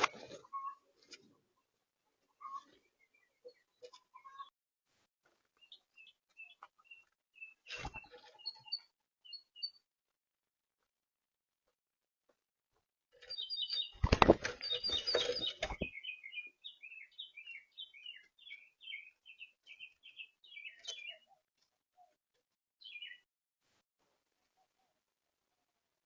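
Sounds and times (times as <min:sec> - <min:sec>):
small birds chirping: 0:05.5 - 0:09.9, 0:13.2 - 0:22.2, 0:22.8 - 0:23.3.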